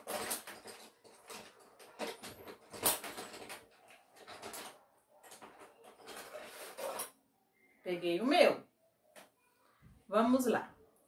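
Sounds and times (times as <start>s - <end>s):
pencils clicking and rattling: 0.0s - 7.2s.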